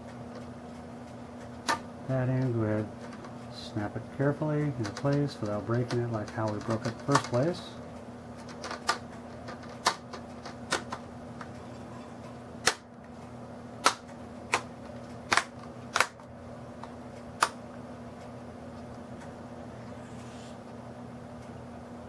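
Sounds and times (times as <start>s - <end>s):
steady low hum: 0.0s - 22.0s
plastic clips snapping: 15.3s - 17.6s.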